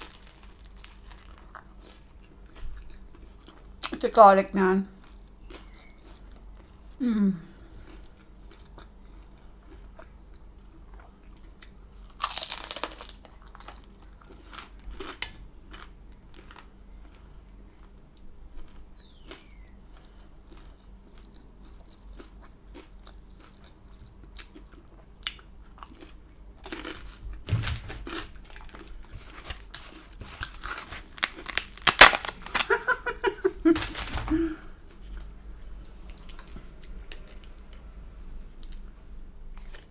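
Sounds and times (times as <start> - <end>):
chewing and crunching bread: 0.0 - 4.0, 4.8 - 39.9
person humming: 7.0 - 7.5.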